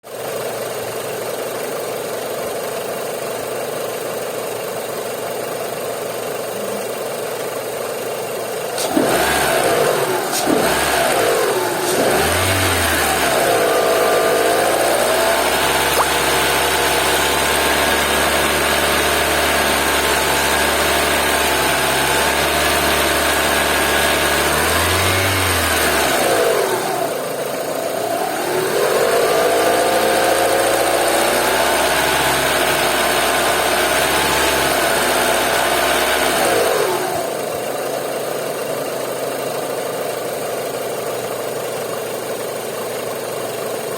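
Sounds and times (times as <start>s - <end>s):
car engine idling and revving: 0.1s - 43.9s.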